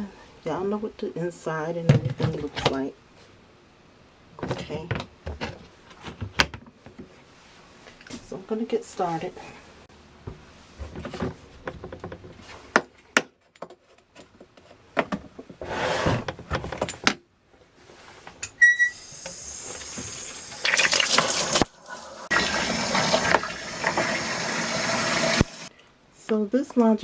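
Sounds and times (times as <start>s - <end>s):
clicks and knocks of handling: 10.3s - 15.6s
short high beep: 18.6s - 19.0s
water pouring into tub: 19.5s - 25.7s.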